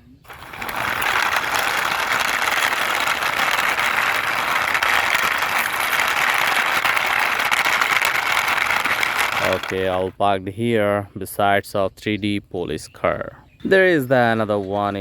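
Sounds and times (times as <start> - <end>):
toy truck wheels rolling: 0.0 - 10.1.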